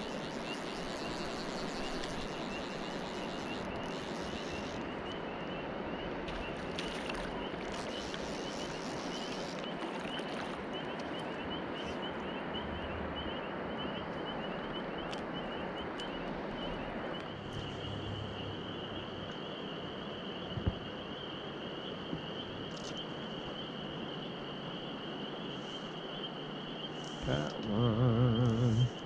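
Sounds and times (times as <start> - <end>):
crickets trilling: 0.0 - 29.0
flowing water rushing: 6.2 - 11.4.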